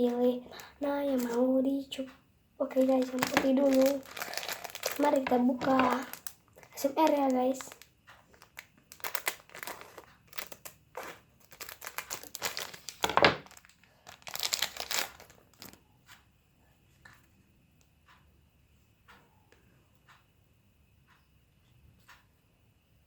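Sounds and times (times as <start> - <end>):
packaging tearing and crinkling: 2.8 - 15.8.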